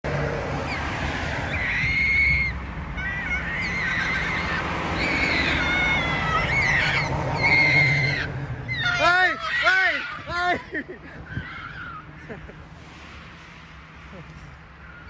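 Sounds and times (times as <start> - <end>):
magpie warbling call: 1.5 - 9.1.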